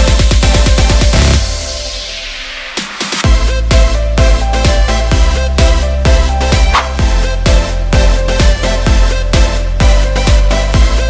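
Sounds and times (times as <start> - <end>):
kick drum: 0.0 - 1.6, 3.2 - 11.0
electronic dance music: 0.0 - 11.0
deep bass line: 3.2 - 11.0.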